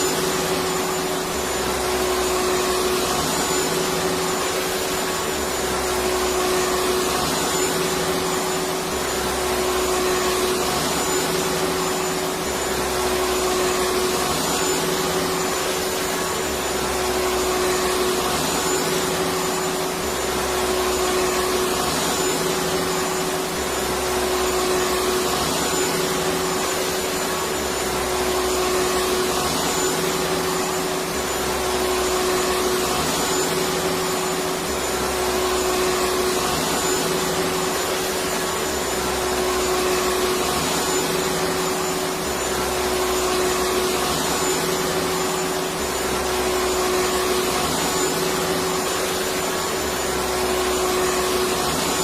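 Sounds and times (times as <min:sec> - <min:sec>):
vacuum cleaner running: 0:00.0 - 0:52.0.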